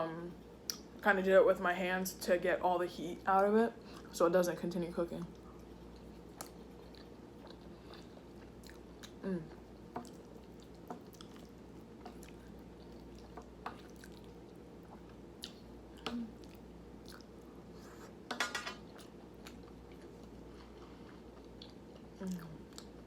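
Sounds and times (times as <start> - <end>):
chewing and wet mouth sounds: 5.2 - 18.1, 18.9 - 23.0.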